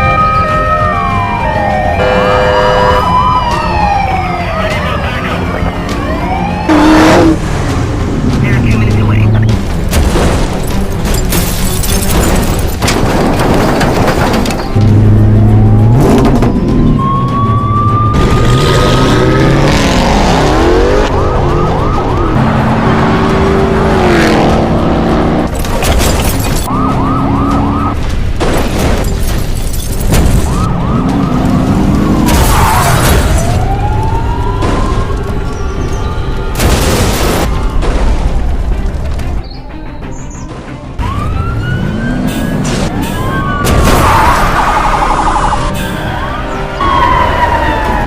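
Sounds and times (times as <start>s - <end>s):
police sirens wailing and yelping: 0.0s - 7.4s, 14.6s - 25.6s, 26.4s - 28.1s, 30.4s - 36.6s, 41.0s - 48.0s
car engines: 0.0s - 39.5s, 40.1s - 48.0s.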